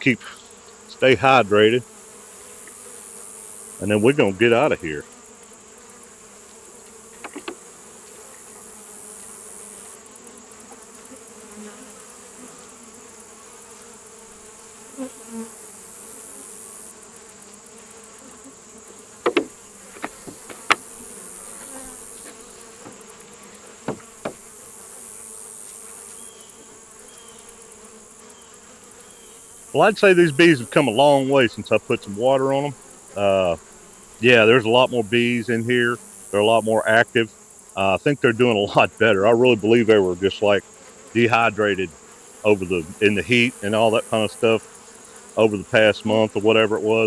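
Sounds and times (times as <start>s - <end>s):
honeybees buzzing: 0.0s - 47.0s
knocks on hive: 7.2s - 7.7s, 19.2s - 21.2s, 22.2s - 23.2s, 23.8s - 24.6s.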